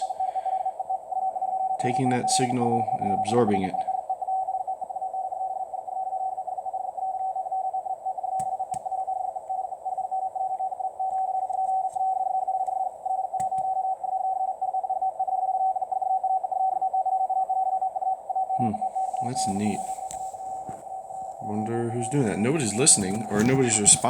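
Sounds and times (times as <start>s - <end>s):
radio band hiss: 0.0s - 0.7s, 1.8s - 4.1s, 18.6s - 24.0s
fast morse code beeps: 0.0s - 6.4s, 18.6s - 24.0s
static clicks: 6.6s - 14.2s, 18.9s - 24.0s.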